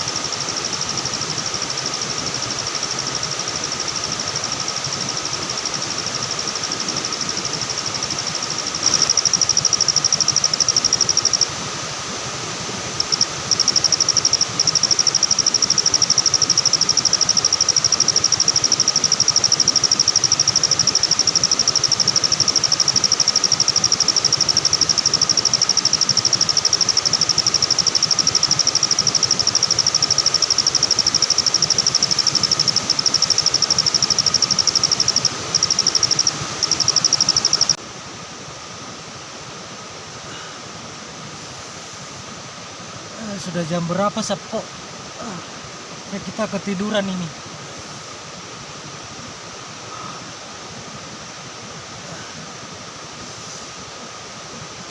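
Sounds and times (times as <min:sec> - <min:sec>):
faint steady high note: 0:00.0 - 0:37.8
insects trilling: 0:00.0 - 0:37.8, 0:38.5 - 0:54.9.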